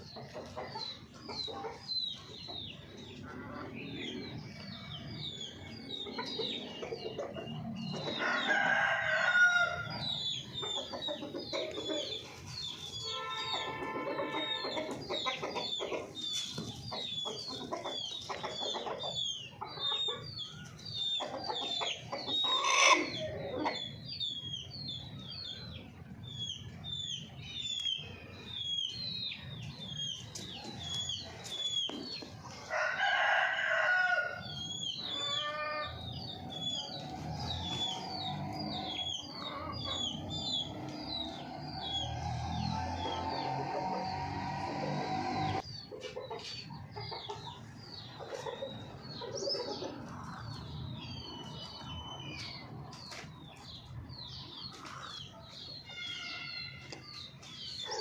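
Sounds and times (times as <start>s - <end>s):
chickens clucking: 0.0s - 58.0s
chickens peeping: 0.0s - 58.0s
drawn-out chicken call: 8.2s - 16.4s, 21.2s - 23.8s, 32.6s - 45.6s, 55.8s - 57.1s.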